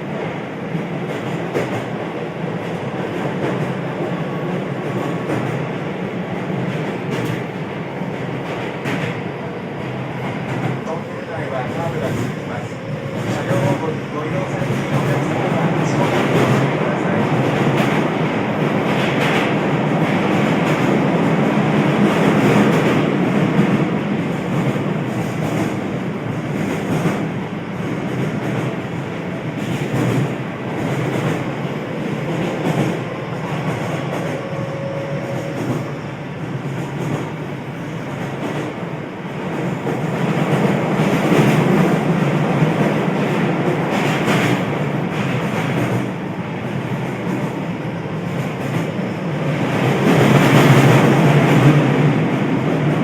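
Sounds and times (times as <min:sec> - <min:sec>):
train wheels rumbling on rail: 0:00.0 - 0:53.0
faint squeal: 0:34.3 - 0:36.0.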